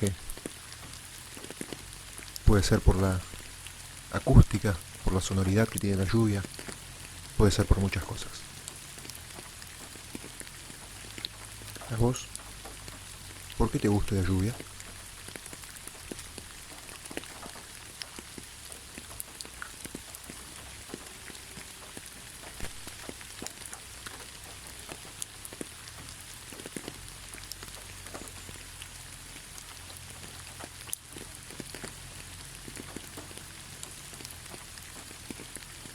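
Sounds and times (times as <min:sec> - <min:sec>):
raindrops ticking: 0:00.0 - 0:35.9
steady rain falling: 0:00.0 - 0:35.9.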